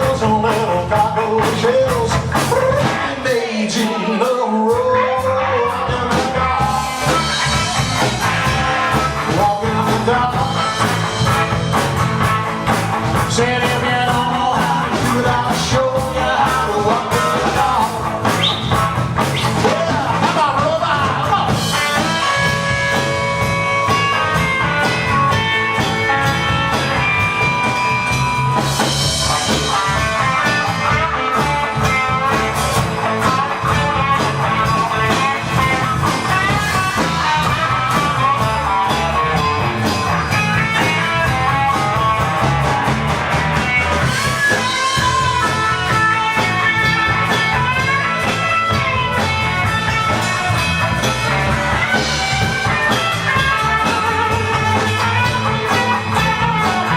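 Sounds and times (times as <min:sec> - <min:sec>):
bass and drums: 0:00.0 - 0:56.9
electric guitar lead: 0:00.0 - 0:56.9.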